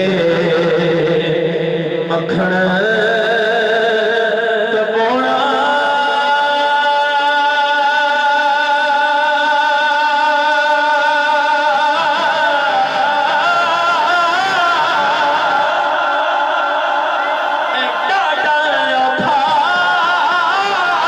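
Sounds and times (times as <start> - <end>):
man singing a long note: 0.0 - 21.0.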